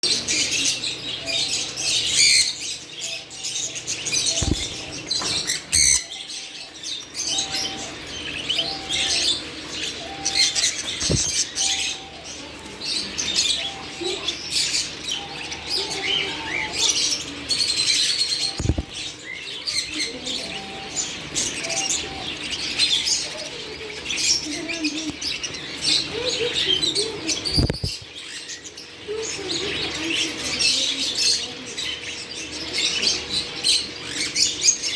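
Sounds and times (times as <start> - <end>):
parrots chirping: 0.0 - 34.9.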